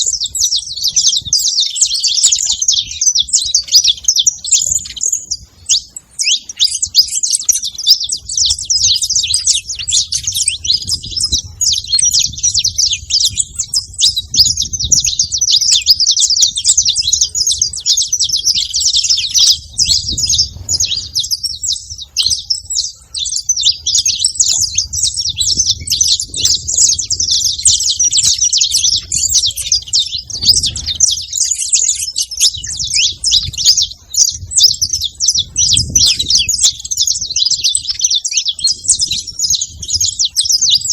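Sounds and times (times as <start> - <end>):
finch singing high chirps and trills: 0.0 - 40.9.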